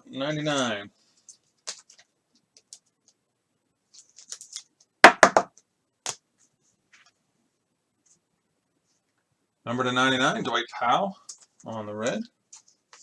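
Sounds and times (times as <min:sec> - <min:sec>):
cards scraping and rustling: 0:00.6 - 0:03.2, 0:03.9 - 0:04.8, 0:12.5 - 0:13.0
sharp taps on cards: 0:05.0 - 0:06.2.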